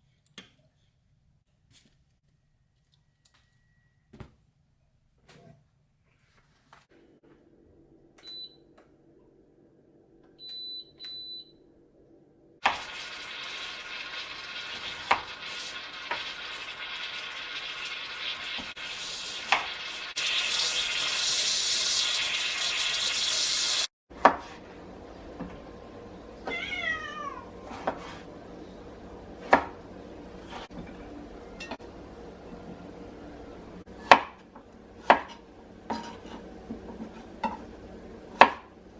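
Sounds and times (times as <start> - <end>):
cat meowing: 26.4 - 27.6.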